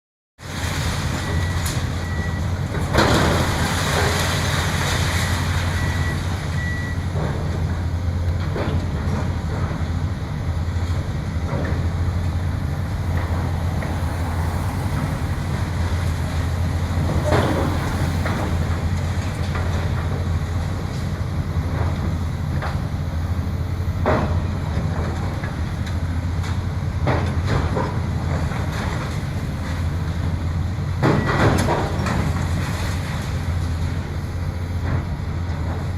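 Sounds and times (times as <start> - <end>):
diesel demolition machinery running: 0.4 - 35.9
reversing alarm beeping: 1.2 - 2.5, 5.2 - 7.0
debris crashing: 2.7 - 6.3.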